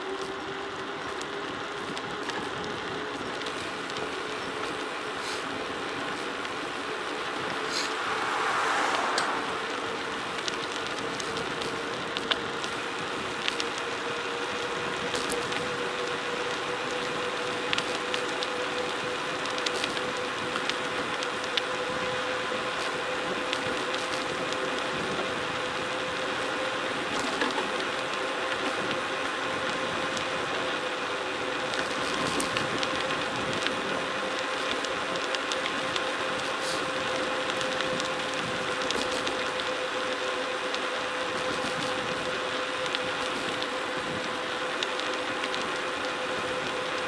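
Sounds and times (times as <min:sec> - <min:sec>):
tyres rolling on gravel: 0:00.0 - 0:47.0
steady whine: 0:01.2 - 0:20.8.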